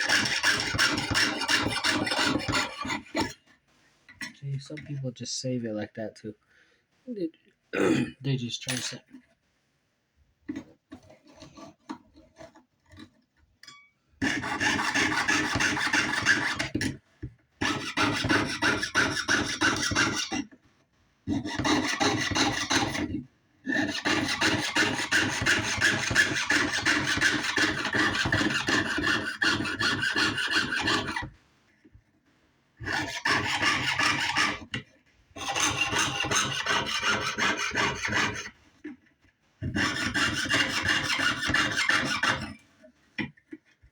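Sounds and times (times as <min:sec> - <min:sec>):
saw cutting sheet metal: 0:00.0 - 0:03.4, 0:14.2 - 0:17.0, 0:17.6 - 0:20.5, 0:21.3 - 0:31.3, 0:32.8 - 0:34.7, 0:35.4 - 0:38.6, 0:39.6 - 0:42.6.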